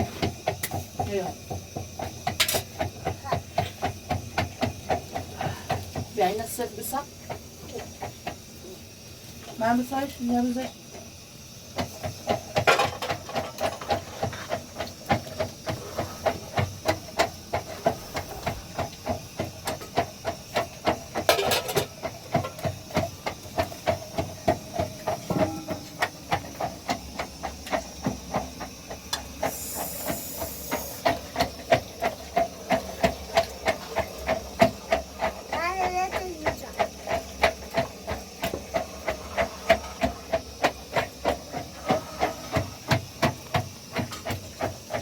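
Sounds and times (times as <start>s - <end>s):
rhythmic pounding with ringing: 16.3s - 41.8s.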